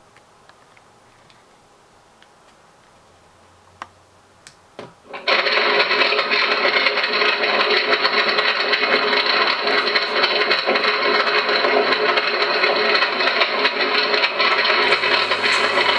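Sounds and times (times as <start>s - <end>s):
recorded fire noise from loudspeaker: 5.0s - 15.9s.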